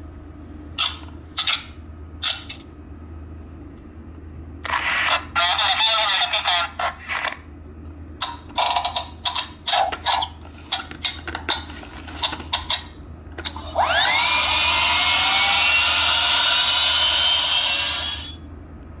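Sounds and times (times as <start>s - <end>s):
toy engine whine: 8.5s - 18.4s.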